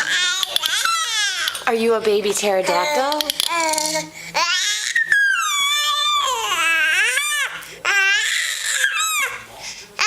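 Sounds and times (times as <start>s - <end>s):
baby squealing: 0.0s - 1.6s, 3.5s - 9.4s.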